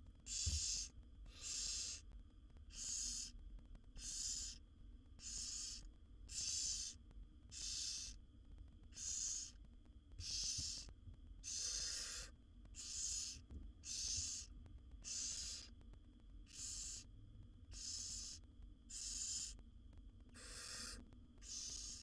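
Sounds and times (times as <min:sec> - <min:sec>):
steady low hum: 0:00.0 - 0:22.0
owl nestlings hissing begging calls: 0:00.3 - 0:02.0, 0:02.7 - 0:03.3, 0:04.0 - 0:04.6, 0:05.2 - 0:08.2, 0:08.9 - 0:09.6, 0:10.2 - 0:15.7, 0:16.5 - 0:17.1, 0:17.7 - 0:19.6, 0:20.4 - 0:22.0.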